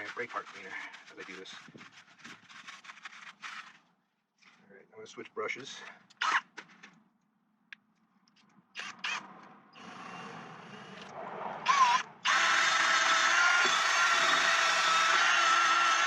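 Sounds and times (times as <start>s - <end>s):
electric drill whining: 9.8s - 11.1s, 11.7s - 16.0s.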